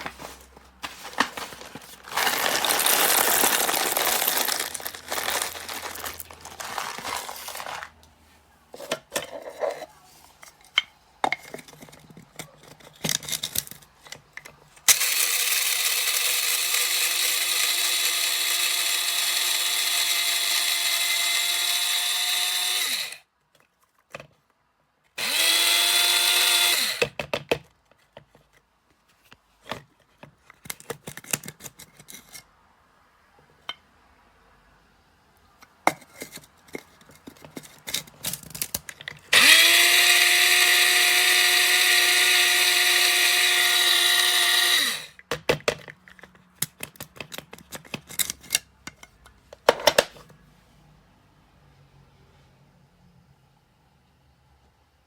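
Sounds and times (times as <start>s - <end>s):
coffee grinder whining: 2.1s - 7.9s, 14.9s - 23.2s, 25.2s - 27.1s, 39.3s - 45.2s.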